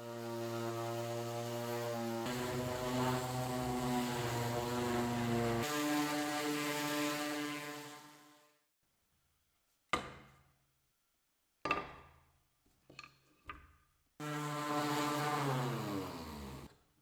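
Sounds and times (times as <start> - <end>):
small power tool motor running: 0.0 - 8.2, 14.2 - 16.7.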